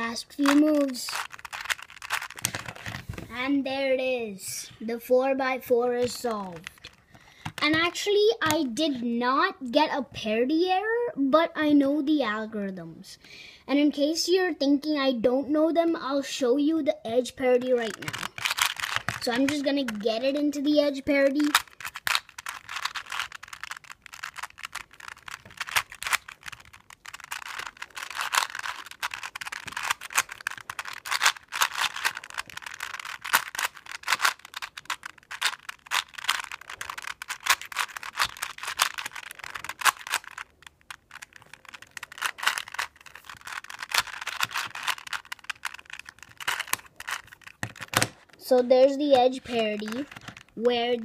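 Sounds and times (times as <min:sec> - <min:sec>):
puzzle cube clicking: 0:00.0 - 0:03.4, 0:05.9 - 0:08.8, 0:17.5 - 0:51.0.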